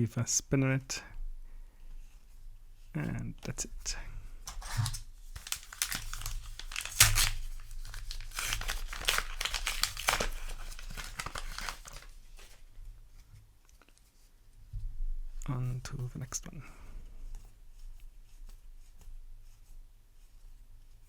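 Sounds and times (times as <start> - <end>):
foil wrapper crinkling: 4.5 - 12.6
wrapper ripping: 4.5 - 12.6.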